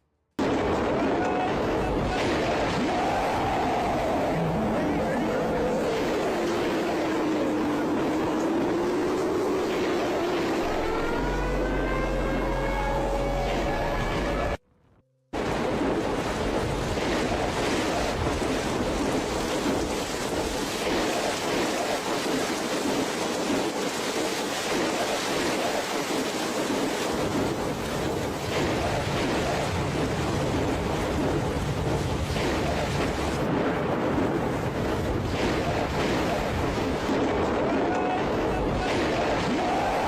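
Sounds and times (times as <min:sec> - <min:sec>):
fast-flowing water rushing: 0:17.0 - 0:29.7.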